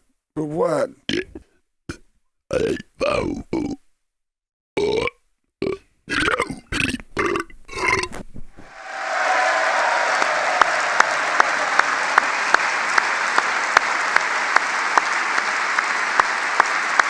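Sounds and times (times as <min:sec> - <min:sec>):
audience applauding: 0:08.7 - 0:17.0
single louder claps: 0:08.8 - 0:17.0.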